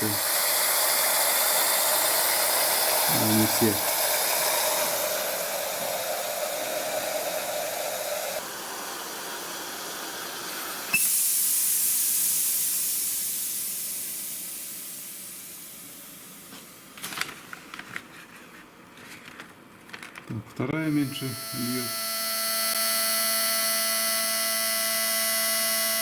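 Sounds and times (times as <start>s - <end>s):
fuel injectors spraying hiss: 0.0s - 15.9s.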